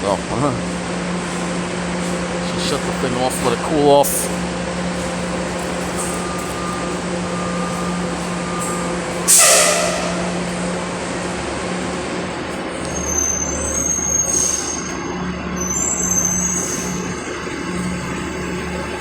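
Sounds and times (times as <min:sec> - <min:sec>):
deep engine rumble: 0:00.0 - 0:14.2
bus idling hum: 0:00.0 - 0:19.0
air brake hiss: 0:08.2 - 0:10.8.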